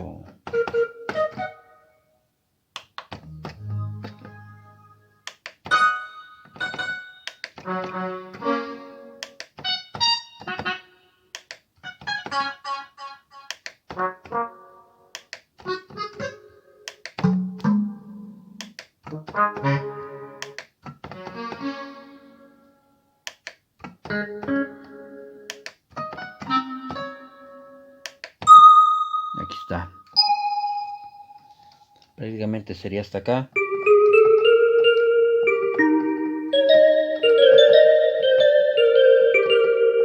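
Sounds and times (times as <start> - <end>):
synthesizer keyboard chords and notes: 3.1 - 11.2, 15.7 - 20.6, 24.1 - 32.0, 33.6 - 40.0.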